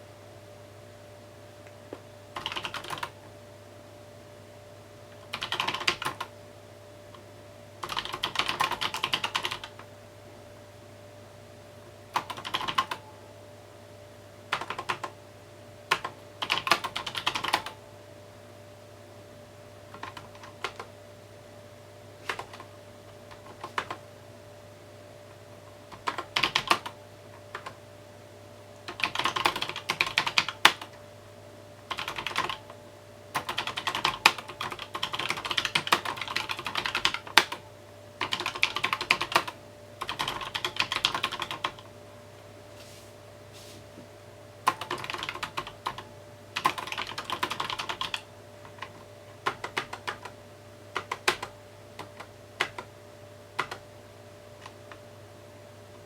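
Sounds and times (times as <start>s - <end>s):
faint steady hum: 0.0s - 56.0s
typing on mechanical keyboard: 2.4s - 3.2s, 5.2s - 6.3s, 7.8s - 9.9s, 12.2s - 13.0s, 14.5s - 15.1s, 15.9s - 17.8s, 19.9s - 20.9s, 22.3s - 22.7s, 23.3s - 24.0s, 25.9s - 27.8s, 28.9s - 31.0s, 31.9s - 32.7s, 33.4s - 37.6s, 38.2s - 41.9s, 44.7s - 52.9s, 53.6s - 53.9s.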